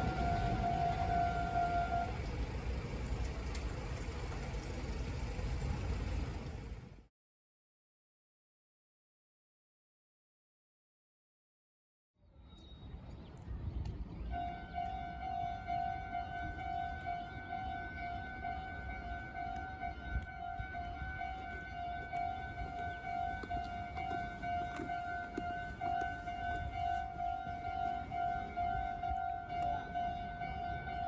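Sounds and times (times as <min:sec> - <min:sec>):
level crossing warning bell: 0:00.0 - 0:03.4, 0:14.4 - 0:31.0.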